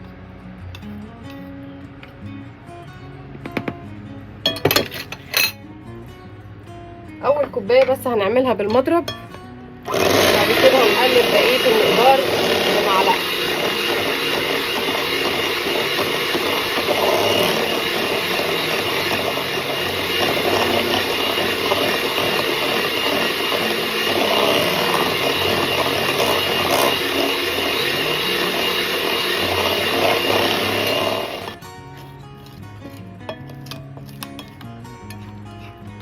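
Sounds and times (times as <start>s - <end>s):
electric mixer whining: 9.9s - 31.6s.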